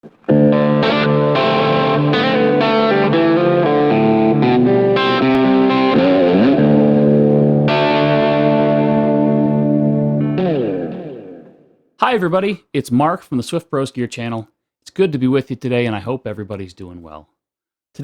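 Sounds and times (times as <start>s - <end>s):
distorted electric guitar chords: 0.0s - 11.8s.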